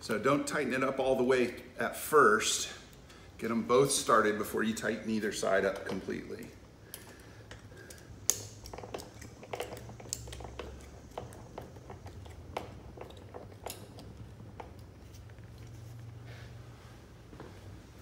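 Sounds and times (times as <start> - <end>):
steady low hum: 0.0 - 18.0
allen driver clicking on bolts: 6.9 - 14.2.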